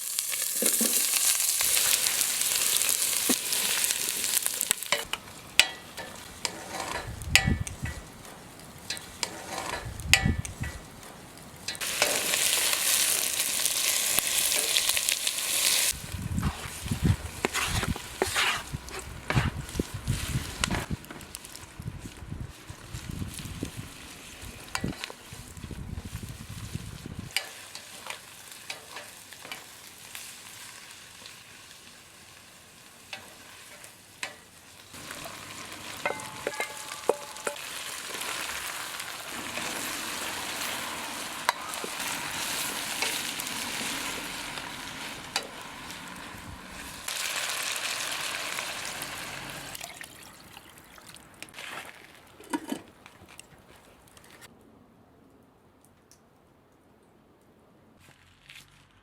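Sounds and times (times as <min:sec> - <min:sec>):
food sizzling in frying pan: 0:00.0 - 0:08.1, 0:11.8 - 0:20.9, 0:23.1 - 0:49.8
utensil scraping pan: 0:00.5 - 0:08.0, 0:08.9 - 0:10.8, 0:11.7 - 0:13.2, 0:13.8 - 0:20.9, 0:35.3 - 0:38.5.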